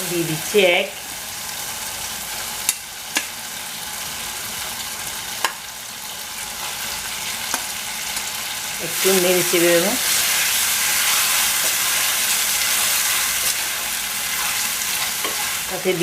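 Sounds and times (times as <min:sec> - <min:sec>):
masala sizzling in a frying pan: 0:00.0 - 0:16.0.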